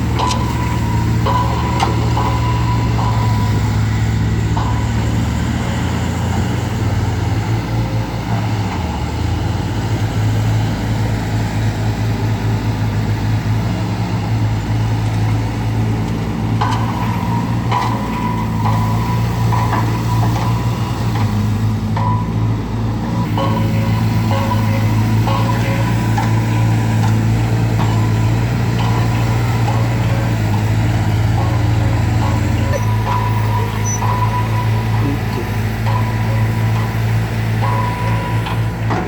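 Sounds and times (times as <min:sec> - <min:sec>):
metal clanks: 0:00.0 - 0:07.0, 0:15.0 - 0:22.5
diesel engine droning: 0:00.0 - 0:39.0
metallic squeals: 0:27.6 - 0:38.7.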